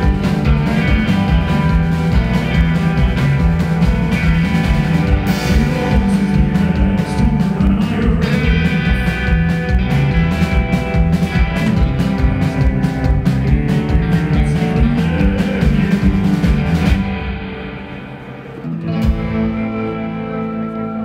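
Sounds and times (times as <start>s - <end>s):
live rock band playing: 0.0s - 21.0s.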